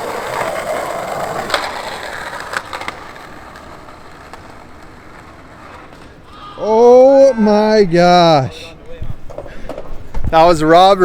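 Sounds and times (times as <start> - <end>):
skateboard trucks scraping metal: 0.0 - 6.6
skateboard clacks: 0.0 - 11.0
skateboard wheels rolling: 0.0 - 11.0.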